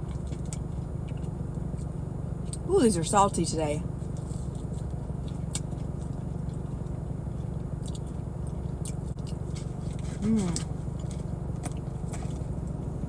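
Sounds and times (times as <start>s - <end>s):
car engine idling: 0.0s - 13.0s
chewing food: 4.0s - 12.7s.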